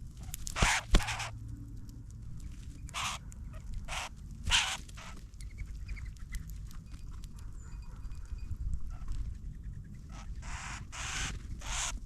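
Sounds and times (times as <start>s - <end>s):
harsh bird calls: 0.6s - 1.4s, 2.9s - 3.2s, 10.1s - 12.0s.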